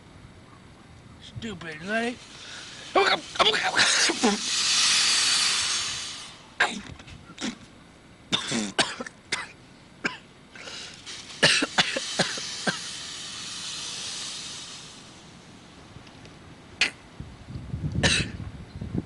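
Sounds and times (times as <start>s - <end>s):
breathy hiss: 1.7s - 7.7s, 8.3s - 17.1s
man coughing: 3.0s - 4.4s, 8.3s - 10.2s, 11.4s - 12.9s, 18.0s - 18.4s.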